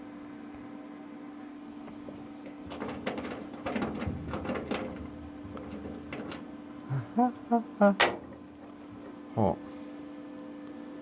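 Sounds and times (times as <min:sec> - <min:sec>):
steady low hum: 0:00.0 - 0:11.0
welding crackling and clattering: 0:02.1 - 0:06.8, 0:08.0 - 0:09.2.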